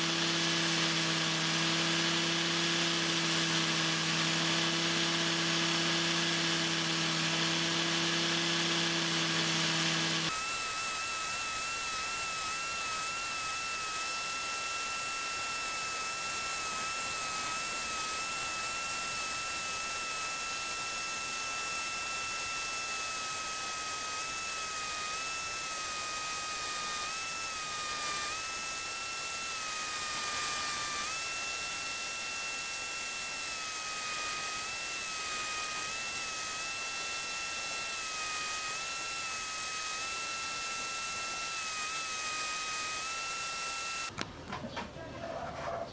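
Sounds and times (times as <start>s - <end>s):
power tool motor whining: 0.0s - 44.2s.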